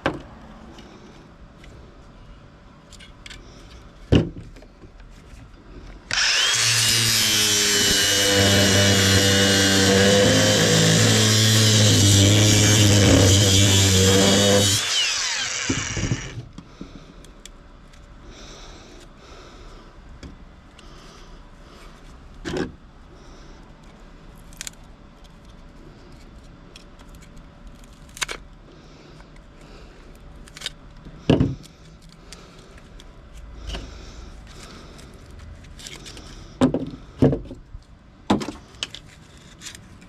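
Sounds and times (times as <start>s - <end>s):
power tool running and winding down: 6.1s - 16.4s.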